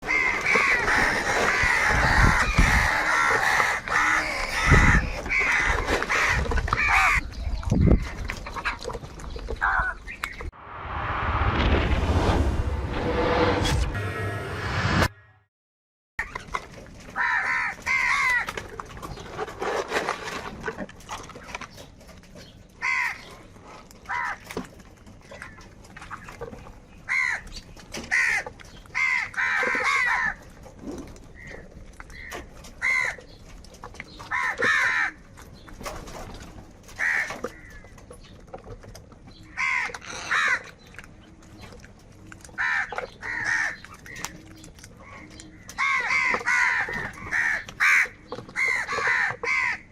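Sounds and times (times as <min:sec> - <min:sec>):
crows cawing: 0:00.0 - 0:07.2, 0:17.2 - 0:18.6, 0:22.8 - 0:23.3, 0:24.1 - 0:24.4, 0:27.1 - 0:30.4, 0:31.4 - 0:33.3, 0:34.3 - 0:35.2, 0:37.0 - 0:37.9, 0:39.5 - 0:40.7, 0:42.6 - 0:44.3, 0:45.7 - 0:49.9.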